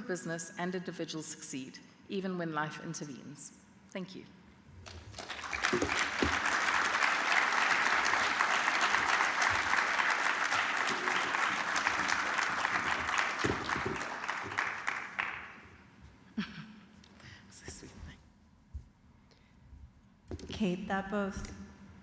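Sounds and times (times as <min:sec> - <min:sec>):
audience applauding: 0:04.8 - 0:15.6.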